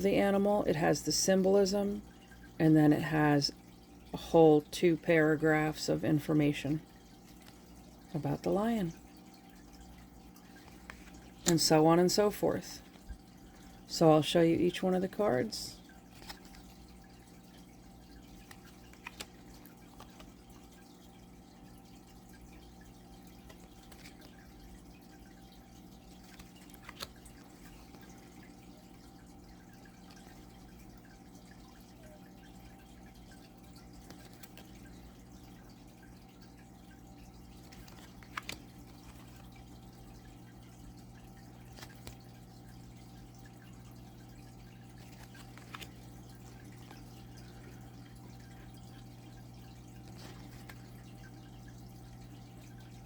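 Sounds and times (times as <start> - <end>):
cards being flipped: 18.4 - 20.4, 23.4 - 24.4, 26.2 - 28.2, 37.6 - 39.5, 45.0 - 47.0.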